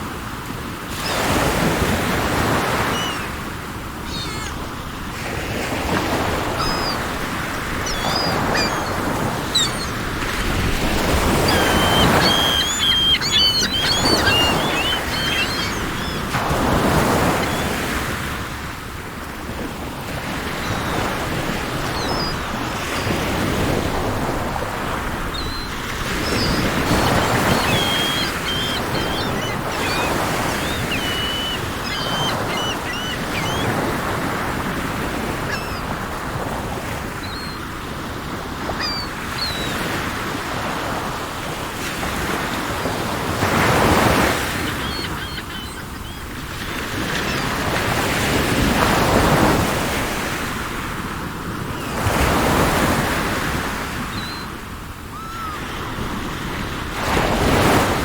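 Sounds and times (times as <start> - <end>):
sea waves washing in: 0.0 - 58.0
birds chirping: 1.0 - 18.5, 20.2 - 40.8, 41.9 - 49.9.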